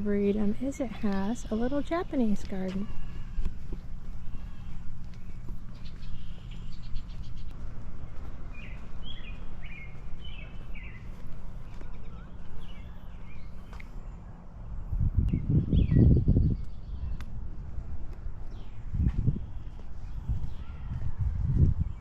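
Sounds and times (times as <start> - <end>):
songbirds chirping: 0.0 - 22.0
steady low rumble: 0.0 - 22.0.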